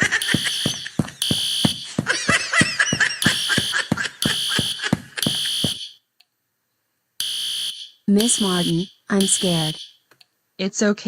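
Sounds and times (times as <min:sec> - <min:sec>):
rapid regular ticking: 0:00.0 - 0:02.0
fire alarm horn blasts: 0:00.2 - 0:02.0, 0:03.2 - 0:06.0, 0:07.2 - 0:10.0.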